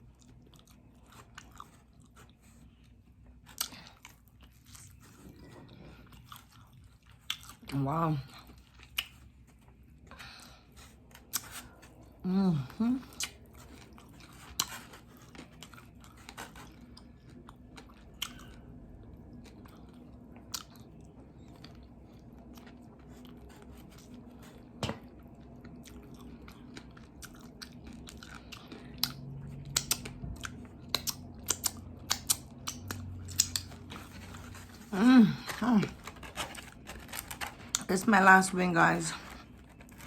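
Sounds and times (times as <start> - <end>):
chewing crispy fried chicken: 0.0 - 40.0.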